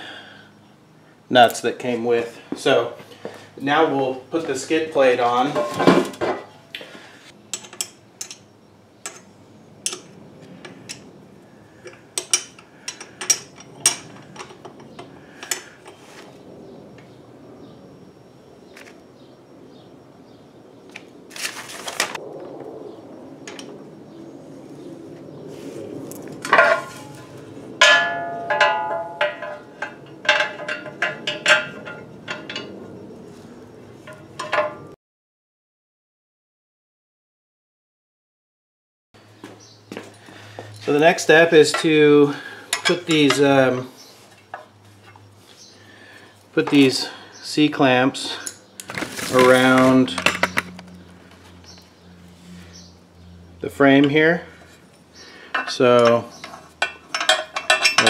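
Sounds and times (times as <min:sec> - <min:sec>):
metal plate clanging: 0:05.4 - 0:06.6, 0:11.9 - 0:16.0, 0:26.4 - 0:33.0, 0:34.0 - 0:34.9, 0:49.0 - 0:50.9, 0:55.5 - 0:58.0
metal clinks and knocks: 0:11.8 - 0:16.0, 0:26.4 - 0:33.0, 0:34.0 - 0:35.0, 0:48.4 - 0:51.9, 0:54.0 - 0:58.0.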